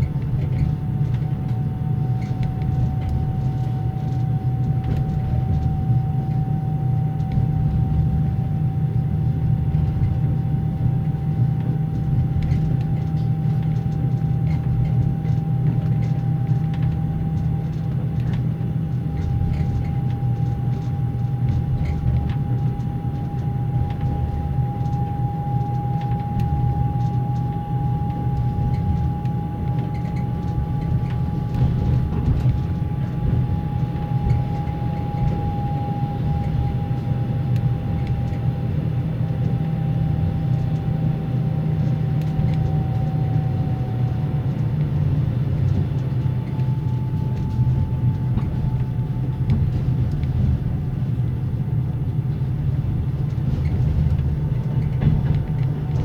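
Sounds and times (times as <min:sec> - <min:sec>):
train car low rumble: 0:00.0 - 0:56.0
generator whining: 0:24.5 - 0:37.9.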